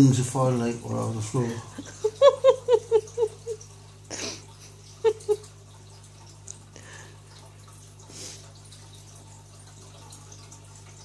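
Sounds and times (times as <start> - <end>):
high-pitched giggling: 1.9 - 3.6, 5.0 - 5.5.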